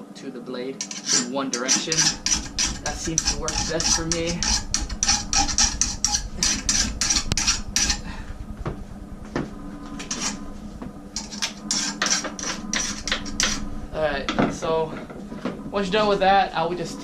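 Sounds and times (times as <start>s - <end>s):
hand file rasping on steel: 0.8s - 8.0s, 11.2s - 13.6s.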